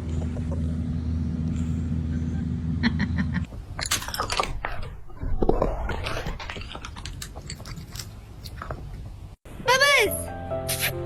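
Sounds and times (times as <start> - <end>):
animal chewing and crunching: 4.2 - 9.3.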